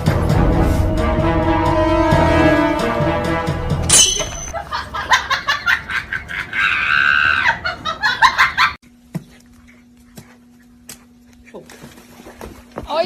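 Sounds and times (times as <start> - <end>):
people laughing: 4.5 - 8.8.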